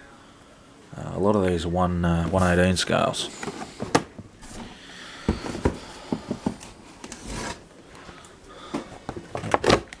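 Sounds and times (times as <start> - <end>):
cardboard rubbing and scraping: 7.1 - 7.6.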